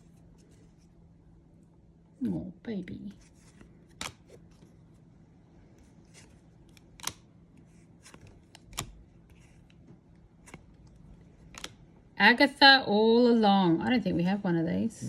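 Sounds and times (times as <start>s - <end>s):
cards rustling: 3.1s - 11.9s.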